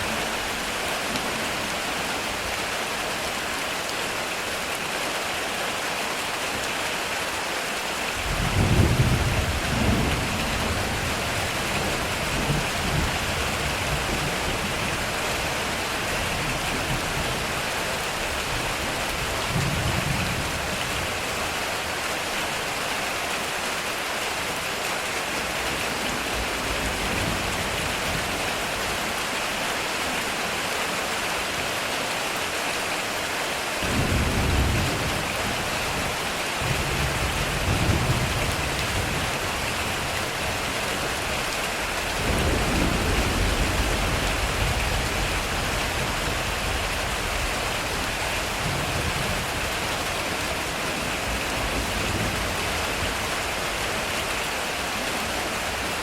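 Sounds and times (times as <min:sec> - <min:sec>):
heavy rain on a metal roof: 0:00.0 - 0:56.0
thunder rumbles: 0:08.2 - 0:15.0, 0:33.8 - 0:41.0, 0:42.0 - 0:53.7.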